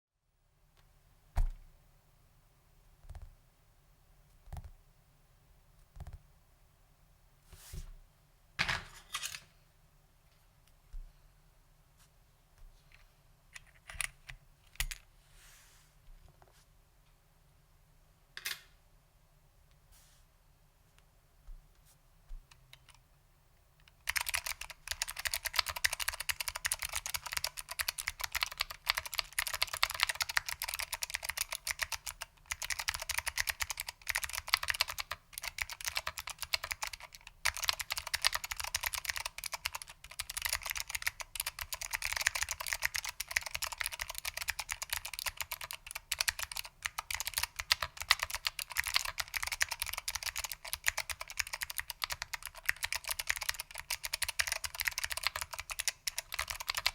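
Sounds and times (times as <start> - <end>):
clicky mechanical keyboard typing: 23.8 - 56.9.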